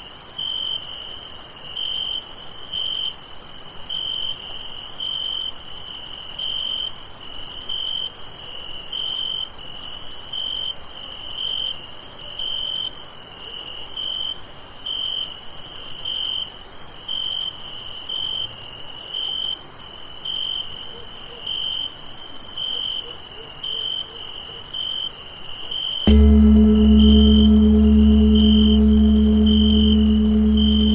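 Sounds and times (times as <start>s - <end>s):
deep bell ringing: 26.1s - 30.9s.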